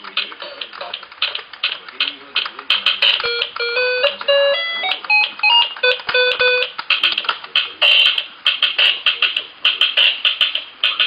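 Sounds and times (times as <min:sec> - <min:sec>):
electronic drum sound effects: 0:02.6 - 0:04.2, 0:04.8 - 0:11.0
toy keyboard beeping notes: 0:02.8 - 0:06.8.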